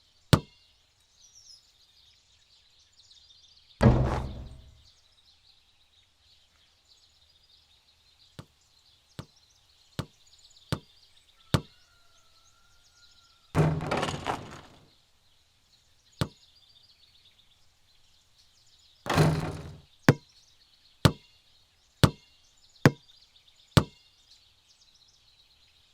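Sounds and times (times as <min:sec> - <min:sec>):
faint birdsong: 0:00.0 - 0:25.9
basketball bouncing on hard court: 0:03.8 - 0:04.8, 0:13.6 - 0:14.8, 0:19.1 - 0:19.8
louder ball hit: 0:03.8 - 0:04.8, 0:13.6 - 0:14.8, 0:19.1 - 0:19.8.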